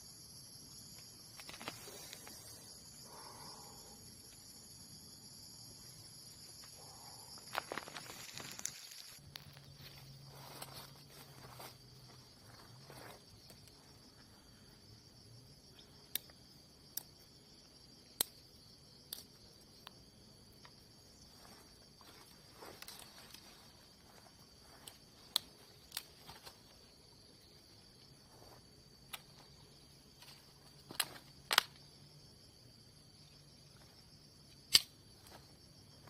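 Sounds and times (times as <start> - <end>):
insects chirring: 0.0 - 36.0
sharp clicks: 34.7 - 35.0.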